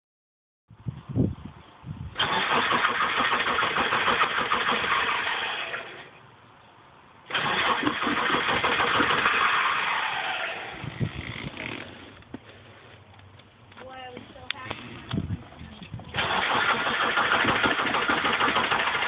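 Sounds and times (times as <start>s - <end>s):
car starter cranking engine: 2.2s - 6.1s, 7.3s - 12.2s, 16.0s - 19.0s.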